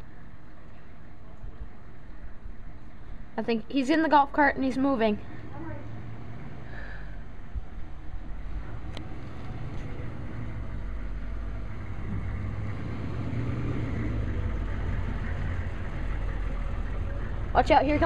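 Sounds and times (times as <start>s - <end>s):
golf cart engine hum: 4.7s - 18.0s.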